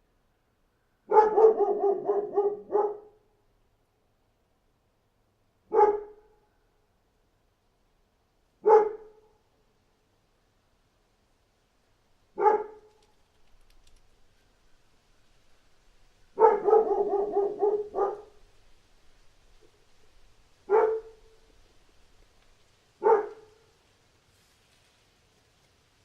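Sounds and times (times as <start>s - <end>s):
dog barking: 1.1s - 3.2s, 5.7s - 6.4s, 8.6s - 9.3s, 12.4s - 12.9s, 16.4s - 18.5s, 20.7s - 21.5s, 23.0s - 23.7s.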